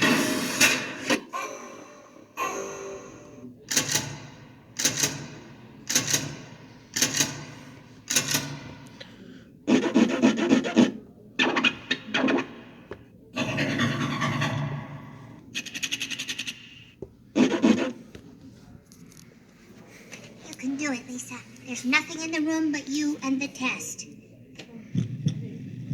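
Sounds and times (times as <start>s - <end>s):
scratchy rubbing rasp: 9.7s - 11.0s, 17.4s - 18.0s.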